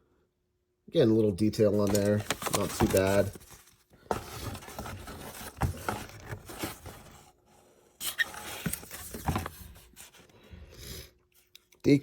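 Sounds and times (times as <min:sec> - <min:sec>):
plastic packaging rustling: 0:01.6 - 0:07.3, 0:08.0 - 0:10.4.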